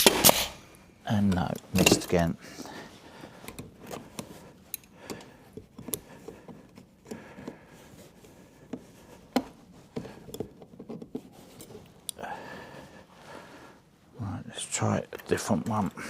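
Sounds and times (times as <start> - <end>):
straps rustling: 0.0 - 16.0
light clicks and knocks: 3.4 - 11.8.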